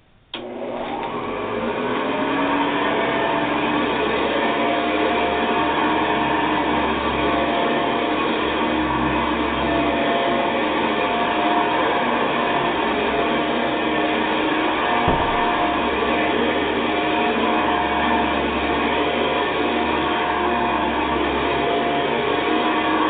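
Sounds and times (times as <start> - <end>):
upright vacuum cleaner running: 0.3 - 23.0
short knock: 15.0 - 15.7.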